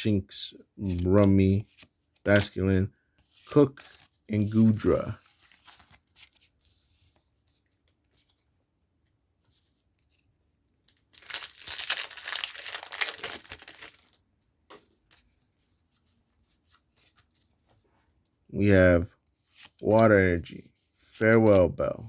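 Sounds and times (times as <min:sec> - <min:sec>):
foil wrapper tearing: 0:11.0 - 0:14.2.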